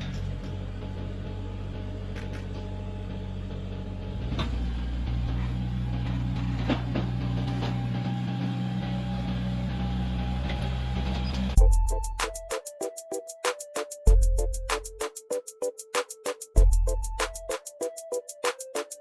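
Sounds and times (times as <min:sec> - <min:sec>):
heavy construction machine engine: 0:00.0 - 0:11.6.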